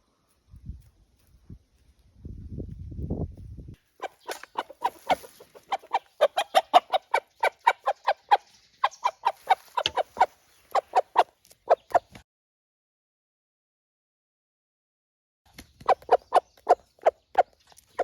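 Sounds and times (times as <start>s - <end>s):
chicken clucking: 4.0s - 12.2s, 15.8s - 18.0s.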